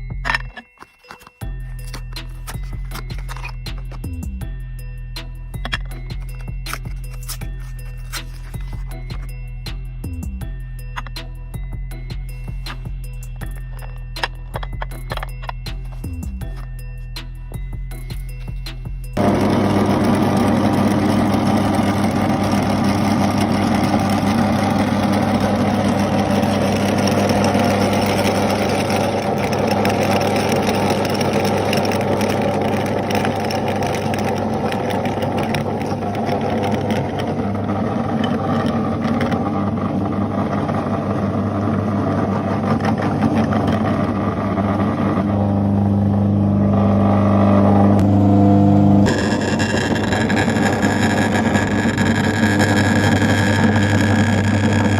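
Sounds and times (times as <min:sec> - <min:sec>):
grinder crackling and crunching: 0:00.0 - 0:04.3, 0:05.6 - 0:09.3, 0:13.3 - 0:16.7, 0:19.2 - 0:48.1, 0:49.0 - 0:54.9
meat grinder motor humming: 0:19.2 - 0:54.9.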